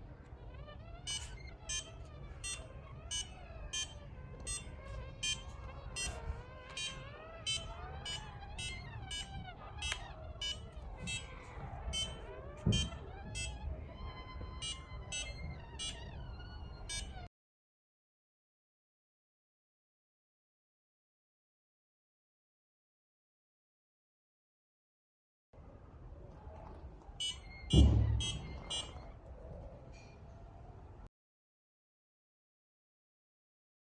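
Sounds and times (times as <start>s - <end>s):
shrill electronic beeps: 1.0s - 17.3s, 27.2s - 29.1s.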